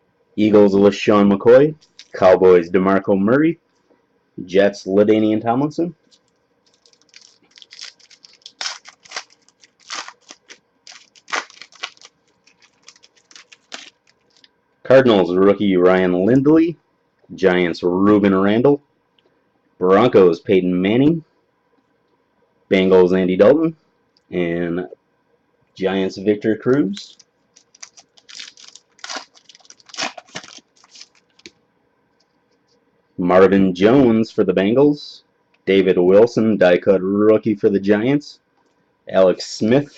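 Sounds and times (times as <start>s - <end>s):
foil wrapper tearing and crinkling: 1.8s - 2.2s, 6.2s - 14.5s, 26.9s - 31.5s.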